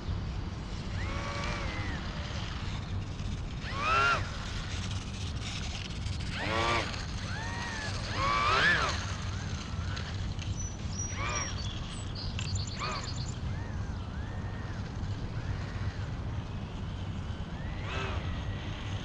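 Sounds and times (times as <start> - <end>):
bird calling: 7.2 - 16.1.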